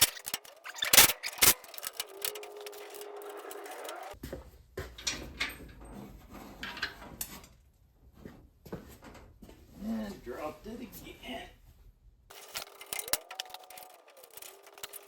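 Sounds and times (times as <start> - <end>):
clicks of small parts and tools: 0.0 - 4.1, 12.3 - 15.0
power drill whining: 0.8 - 4.2.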